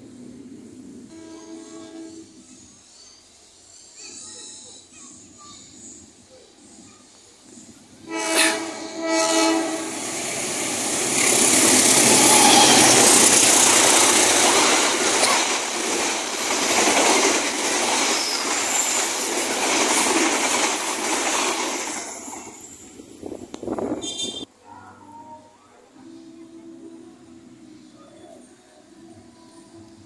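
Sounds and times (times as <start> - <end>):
train horn: 1.1 - 2.4, 8.0 - 10.4, 23.4 - 24.4
train wheels clattering on rail: 10.8 - 24.5.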